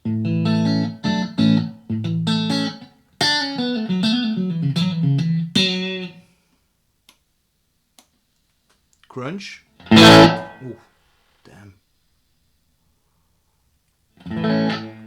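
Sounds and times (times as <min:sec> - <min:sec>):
electric guitar chords and notes: 0:00.0 - 0:06.2, 0:09.8 - 0:10.8, 0:14.2 - 0:15.0.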